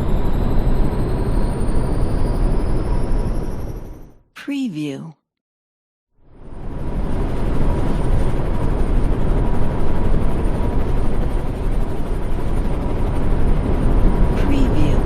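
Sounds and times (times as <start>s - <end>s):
helicopter engine and rotor rumble: 0.0s - 4.1s, 6.4s - 15.0s.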